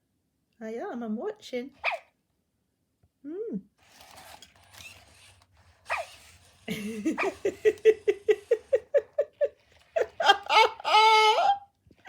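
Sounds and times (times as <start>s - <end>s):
robot dog electronic giggle: 6.7s - 11.2s.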